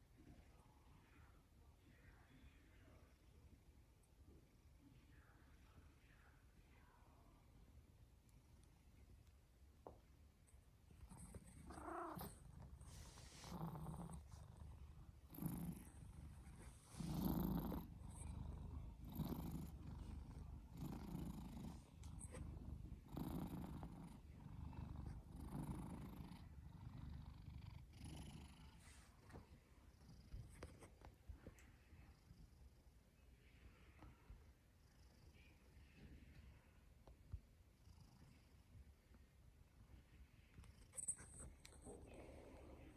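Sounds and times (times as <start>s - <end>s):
cat snoring: 11.0s - 29.1s.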